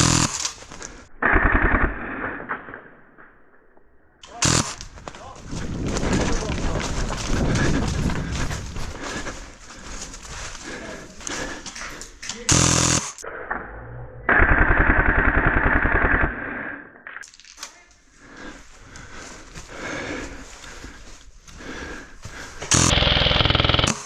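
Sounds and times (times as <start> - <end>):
airsoft rifle firing full-auto: 0.0 - 0.5, 4.3 - 4.8, 12.5 - 13.2, 22.7 - 24.0.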